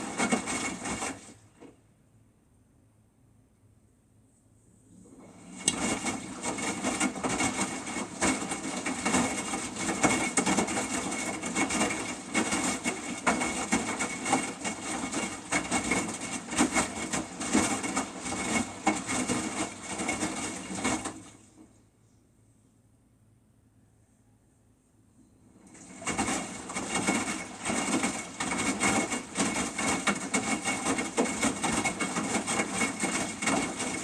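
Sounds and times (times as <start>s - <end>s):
washing machine drum turning: 0.0s - 1.7s, 5.2s - 21.4s, 25.7s - 34.0s.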